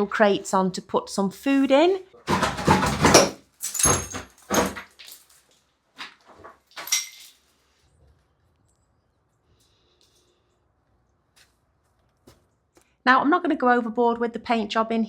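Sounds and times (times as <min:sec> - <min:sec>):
loud knocks and bangs: 0:02.3 - 0:04.8.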